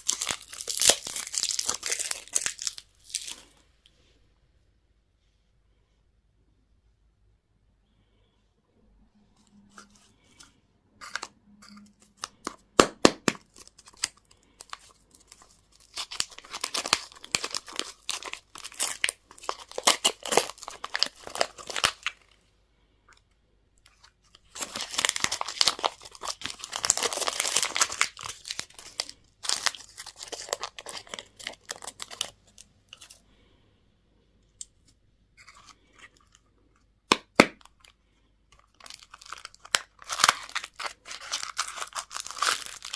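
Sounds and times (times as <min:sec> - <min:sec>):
sharp wrapper cracks: 0:00.0 - 0:03.6, 0:11.0 - 0:22.2, 0:24.4 - 0:33.1, 0:38.6 - 0:42.9
wrappers torn and crinkled: 0:00.0 - 0:03.6, 0:13.4 - 0:22.2, 0:24.3 - 0:33.2, 0:38.6 - 0:42.9.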